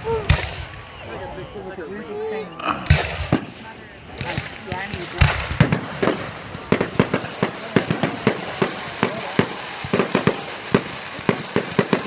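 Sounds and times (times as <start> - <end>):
fireworks popping and cracking: 2.8 - 12.0.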